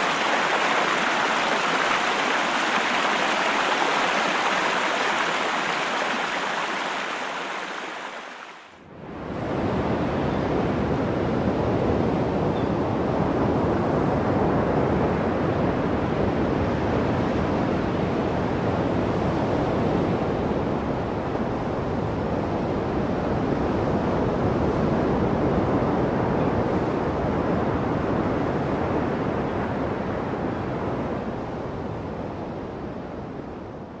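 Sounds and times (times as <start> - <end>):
waterfall roaring: 0.0 - 8.5.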